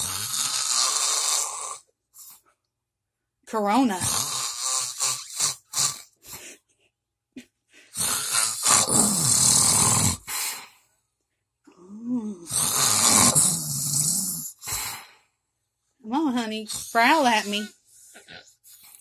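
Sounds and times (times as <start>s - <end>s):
loud rasping snoring: 0.0s - 2.3s, 3.9s - 6.2s, 7.9s - 10.7s, 12.3s - 15.1s
short snorts: 4.0s - 6.6s, 7.8s - 10.8s, 12.4s - 15.2s.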